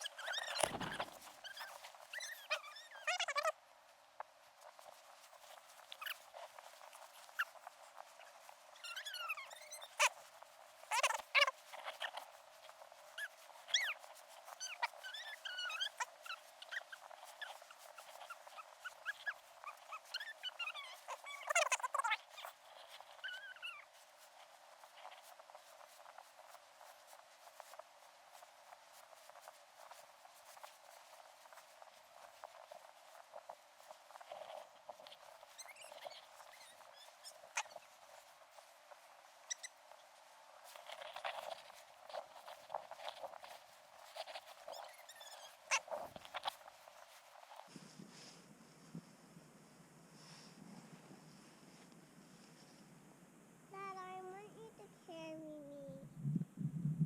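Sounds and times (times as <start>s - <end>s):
dog whimpering and yipping: 0.0s - 3.5s, 13.6s - 23.8s.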